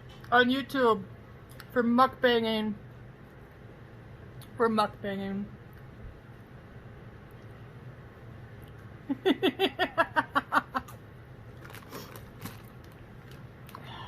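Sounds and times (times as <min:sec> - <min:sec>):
person laughing: 0:09.1 - 0:11.0.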